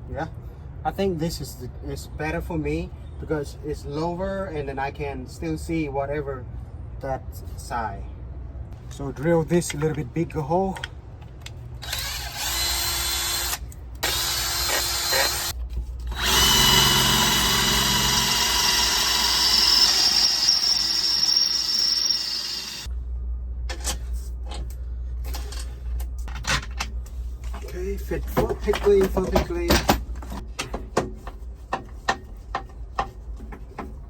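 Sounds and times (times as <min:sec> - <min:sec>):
power drill drilling: 0:11.8 - 0:15.5, 0:16.1 - 0:22.9.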